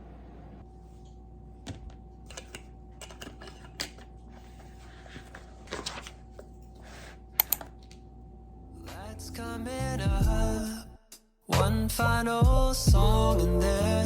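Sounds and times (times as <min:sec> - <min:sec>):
low room hum: 0:00.0 - 0:14.0
desk work clicks and taps: 0:07.4 - 0:08.0.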